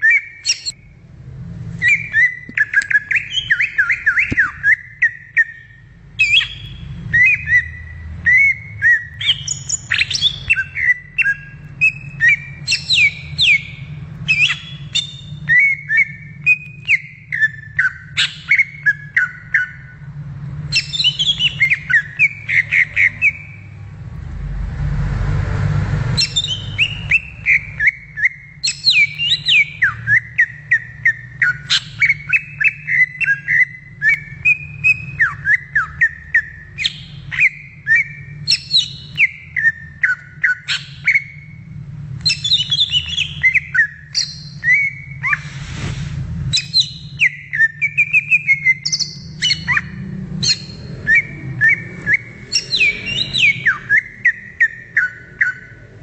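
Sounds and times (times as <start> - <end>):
bird singing whistled song: 0.0 - 1.0, 1.8 - 20.1, 20.7 - 23.8, 26.2 - 45.5, 46.5 - 55.9
short rush of noise: 45.2 - 46.6.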